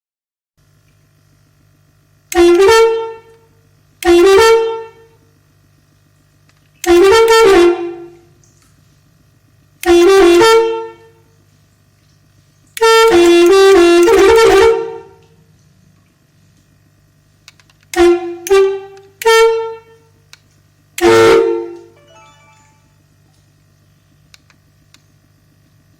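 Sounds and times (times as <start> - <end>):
musical trumpet horn melodies: 2.3 - 3.2, 6.8 - 8.2, 18.0 - 20.0, 21.0 - 23.0.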